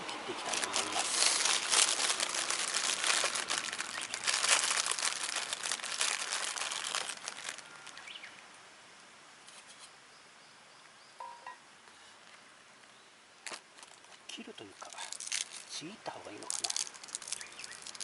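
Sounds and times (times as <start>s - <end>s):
bag of vegetables rustling: 0.0s - 8.2s, 13.4s - 14.1s, 14.8s - 18.0s.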